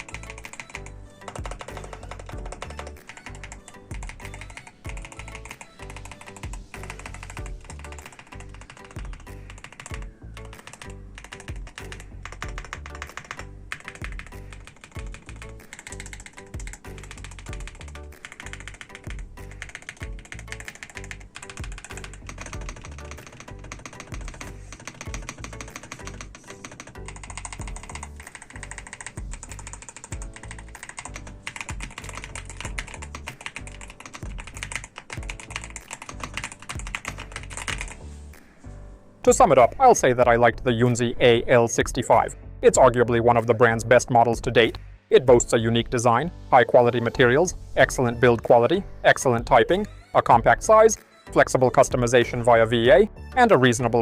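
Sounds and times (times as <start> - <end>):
fast mechanical keyboard typing: 0.0 - 38.0
background music: 0.0 - 54.0.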